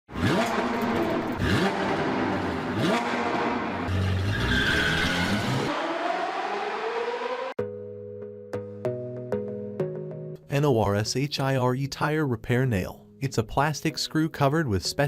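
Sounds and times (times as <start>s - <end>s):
car engine revving: 0.1s - 7.6s
road and tyre noise: 0.1s - 7.6s
tyre squeal: 3.9s - 5.7s.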